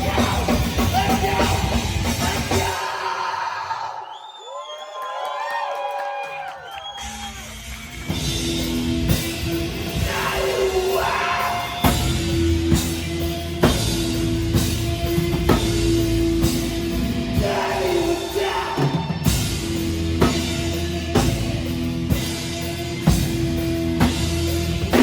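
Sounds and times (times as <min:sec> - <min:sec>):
rock band playing: 0:00.0 - 0:02.8, 0:07.0 - 0:25.0
person singing: 0:10.0 - 0:12.0, 0:17.3 - 0:19.2.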